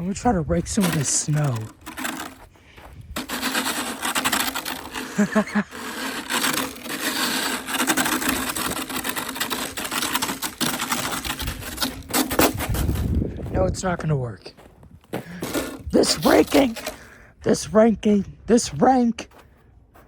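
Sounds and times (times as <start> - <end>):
rake scraping through snow: 0.0 - 13.5, 15.2 - 17.1.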